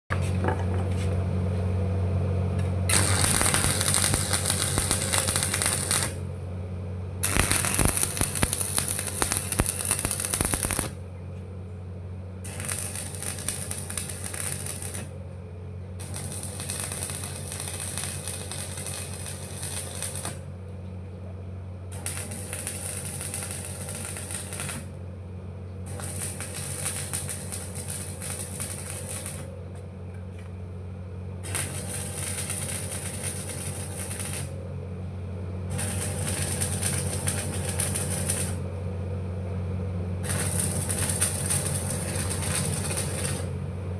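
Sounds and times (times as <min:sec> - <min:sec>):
steady low hum: 0:00.1 - 0:43.9
arc welding crackling: 0:02.9 - 0:06.3, 0:07.2 - 0:11.0, 0:12.4 - 0:15.2, 0:16.0 - 0:20.5, 0:21.9 - 0:25.0, 0:25.9 - 0:29.6, 0:31.4 - 0:34.6, 0:35.7 - 0:38.8, 0:40.2 - 0:43.6.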